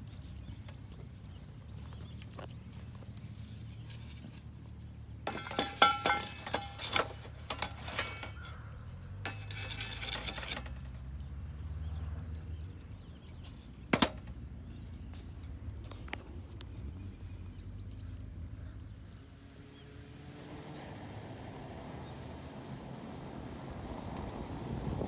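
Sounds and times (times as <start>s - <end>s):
metal cookware clattering: 5.3s - 8.5s, 9.3s - 10.8s, 14.0s - 14.3s.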